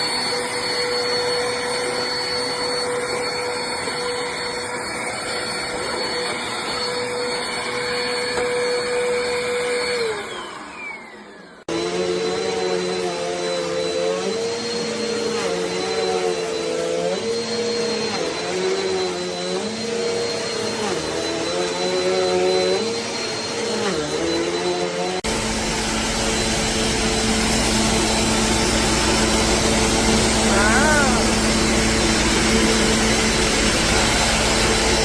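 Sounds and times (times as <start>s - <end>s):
vacuum cleaner running: 0.0s - 35.0s.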